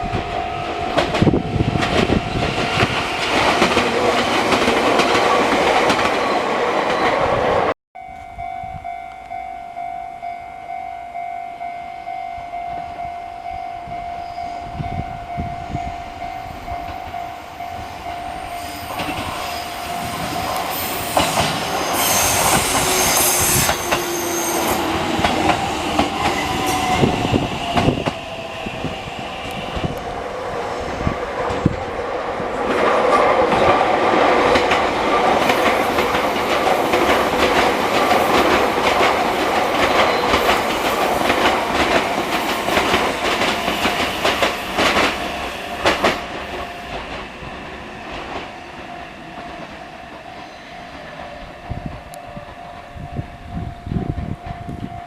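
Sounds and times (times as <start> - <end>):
train wheels clattering over rail joints: 1.0 - 6.3, 32.7 - 49.8.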